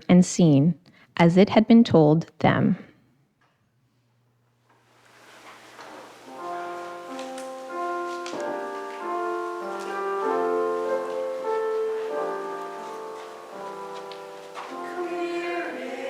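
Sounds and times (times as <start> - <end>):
church organ chords: 5.8 - 16.0.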